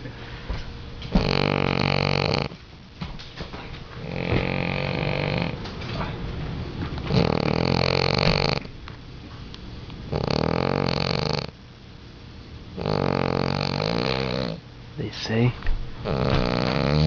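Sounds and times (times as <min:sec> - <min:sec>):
loud rattling snoring: 0:01.1 - 0:02.6, 0:04.0 - 0:05.6, 0:07.1 - 0:08.7, 0:10.1 - 0:11.6, 0:12.8 - 0:14.6, 0:16.0 - 0:17.0.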